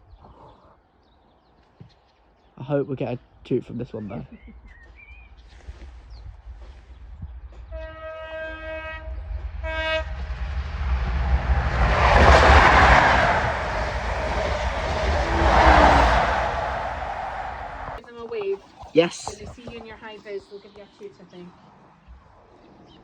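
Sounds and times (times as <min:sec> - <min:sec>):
train horn blasts: 0:07.7 - 0:18.0
train rushing past: 0:08.2 - 0:18.0.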